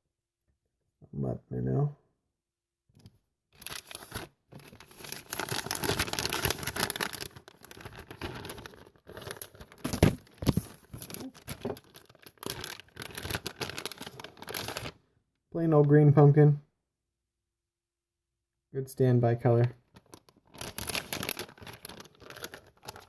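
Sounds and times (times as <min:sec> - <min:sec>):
plastic packs crinkling and rustling: 0:03.6 - 0:15.0, 0:19.9 - 0:23.0.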